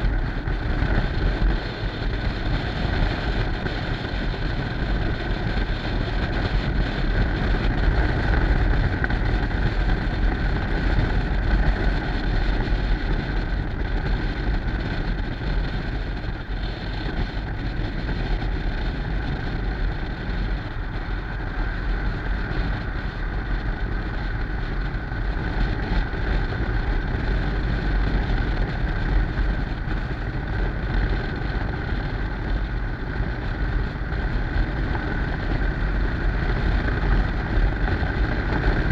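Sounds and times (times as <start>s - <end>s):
motorcycle engine running: 0.0s - 38.9s
wind buffeting microphone: 0.0s - 38.9s.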